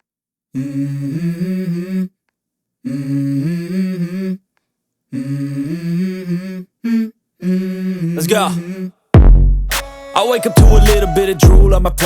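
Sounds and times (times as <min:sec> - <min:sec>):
person humming a melody: 0:10.2 - 0:12.0.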